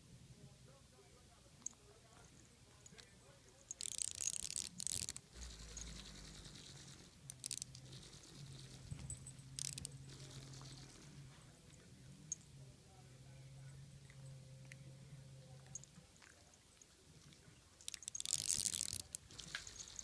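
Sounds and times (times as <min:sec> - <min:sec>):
vibrating toy humming: 0:03.7 - 0:12.4, 0:17.8 - 0:20.0
scratchy rustling: 0:03.8 - 0:11.6, 0:17.9 - 0:20.0.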